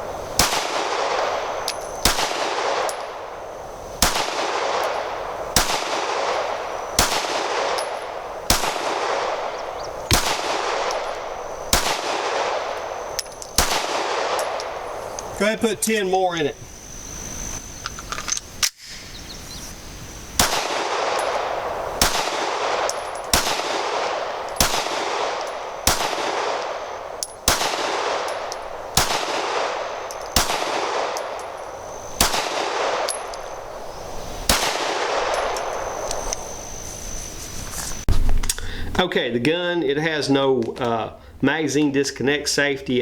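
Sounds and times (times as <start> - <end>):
pistol shots: 0.4 - 3.4, 4.0 - 15.4, 20.4 - 36.6
handling clicks: 1.6 - 2.2, 7.6 - 16.5, 17.8 - 18.8, 28.2 - 29.2, 30.0 - 32.4, 33.0 - 33.7, 35.2 - 36.6.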